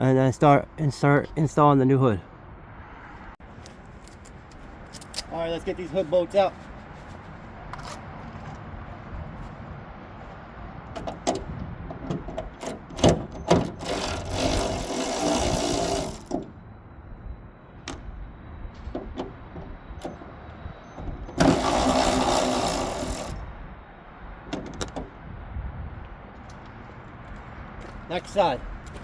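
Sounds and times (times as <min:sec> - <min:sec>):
power tool spinning bolts: 0:13.5 - 0:16.5, 0:21.3 - 0:23.5.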